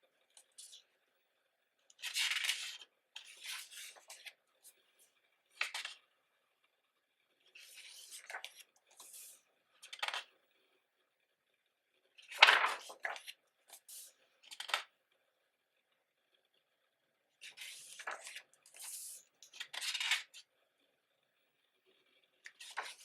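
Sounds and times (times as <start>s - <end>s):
book pages turning: 1.9s - 4.4s, 5.6s - 6.0s, 7.5s - 10.3s, 12.2s - 14.9s, 17.4s - 20.4s, 22.4s - 23.0s.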